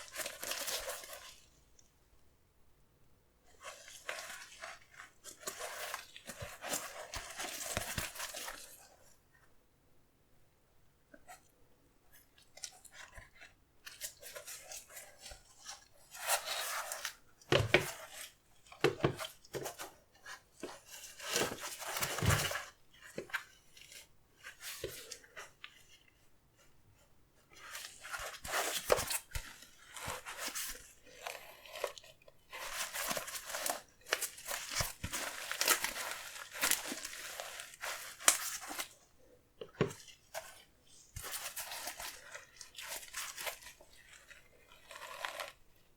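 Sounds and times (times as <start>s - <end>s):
paper crinkling and rustling: 20.6s - 25.5s, 27.6s - 39.0s.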